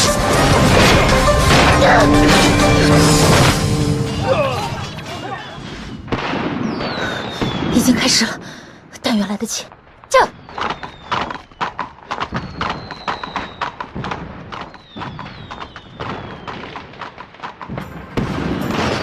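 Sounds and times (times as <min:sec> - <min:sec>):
fireworks popping and crackling: 0:09.7 - 0:19.0.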